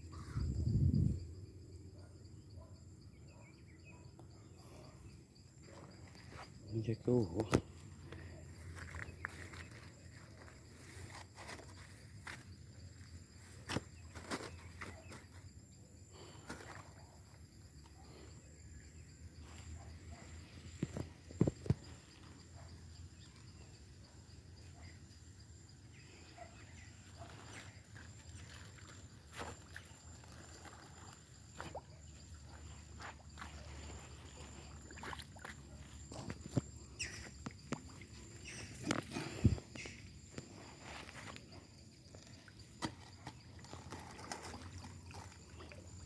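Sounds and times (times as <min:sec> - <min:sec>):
footsteps crunching twigs and leaves: 0:07.4 - 0:15.3.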